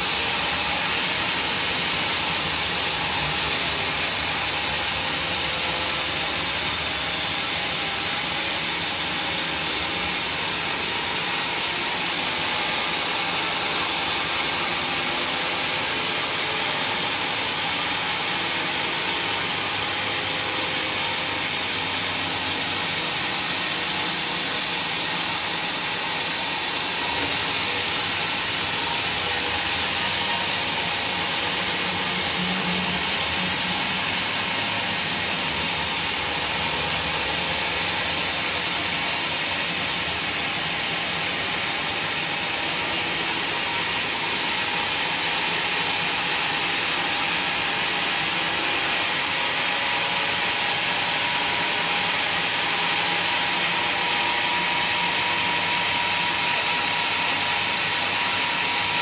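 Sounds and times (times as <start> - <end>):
power tool whirring on wood: 22.5 - 59.0.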